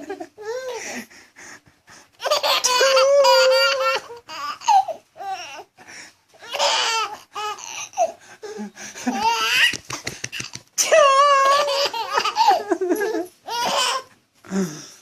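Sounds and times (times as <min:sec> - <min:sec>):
baby laughing: 0:02.2 - 0:05.6, 0:06.4 - 0:08.2, 0:09.0 - 0:14.1.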